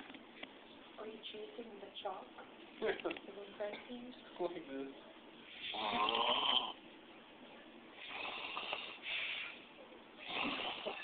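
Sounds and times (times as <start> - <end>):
man snoring loudly: 5.7 - 6.8, 10.2 - 11.0.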